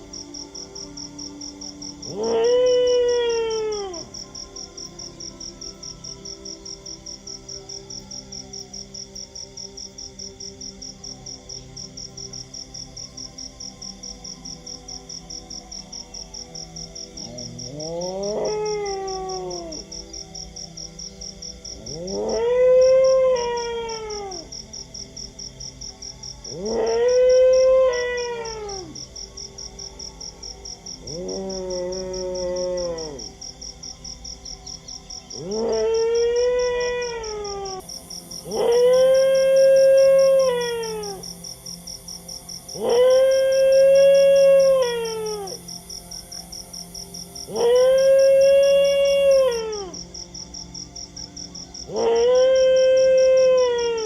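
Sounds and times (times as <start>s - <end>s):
dog howling: 2.0s - 4.3s, 17.3s - 20.1s, 21.8s - 24.5s, 26.4s - 29.0s, 31.0s - 33.4s, 35.3s - 41.4s, 42.7s - 45.7s, 47.4s - 50.1s, 51.8s - 54.0s.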